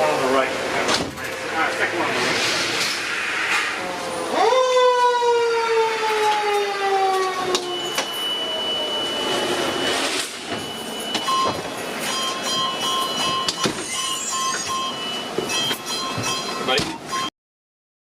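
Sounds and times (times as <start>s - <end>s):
mechanical siren winding down: 4.2s - 10.2s
repeated beeping: 7.8s - 17.3s.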